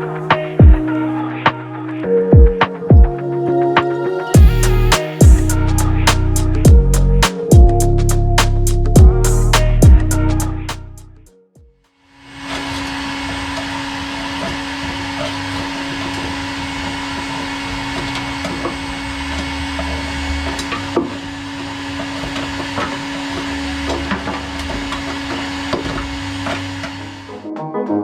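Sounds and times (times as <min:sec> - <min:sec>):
small electric tool humming: 0:12.2 - 0:27.4.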